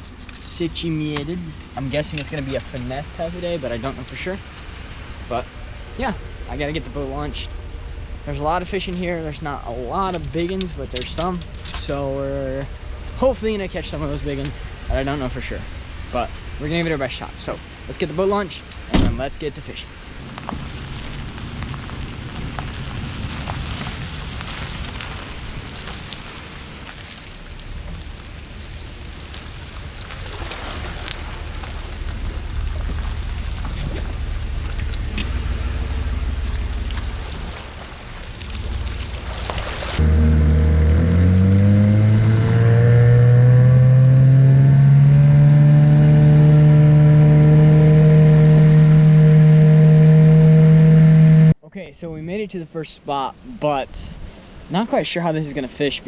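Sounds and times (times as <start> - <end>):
low rumble: 0.0 - 26.0, 27.4 - 51.6
boat motor running: 39.7 - 51.6.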